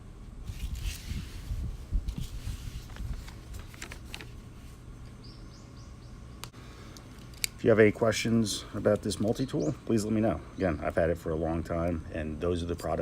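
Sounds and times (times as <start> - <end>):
handling rubbing and rustling: 0.3 - 5.0.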